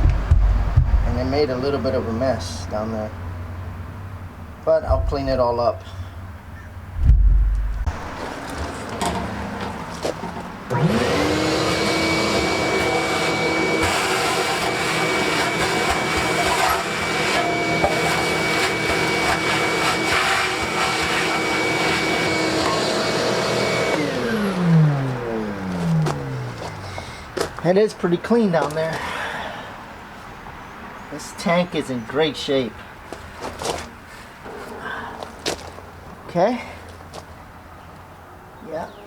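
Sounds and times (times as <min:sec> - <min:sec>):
vacuum cleaner motor running: 0:10.7 - 0:27.0.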